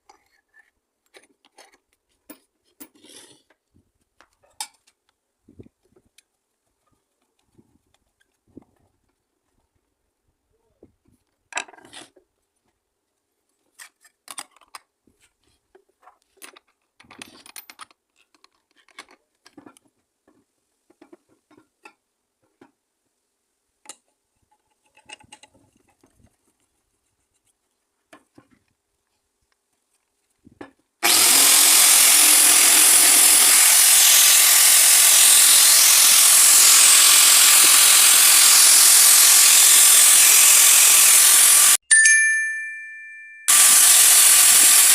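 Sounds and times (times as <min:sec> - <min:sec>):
tools and metal clinking: 0:16.4 - 0:19.8
angle grinder cutting metal: 0:31.0 - 0:41.8, 0:43.5 - 0:44.9.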